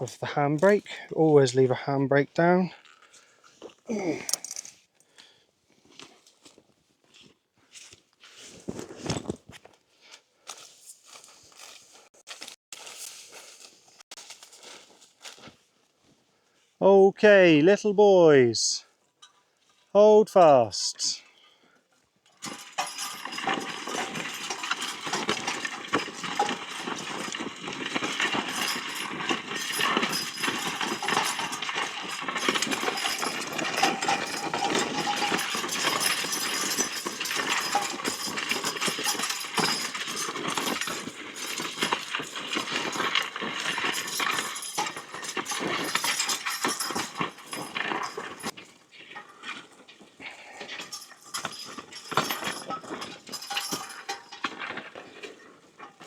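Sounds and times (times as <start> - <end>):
hoof steps: 2.6 - 16.8, 21.2 - 56.0
harness chains jingling: 3.9 - 4.7, 22.3 - 56.0.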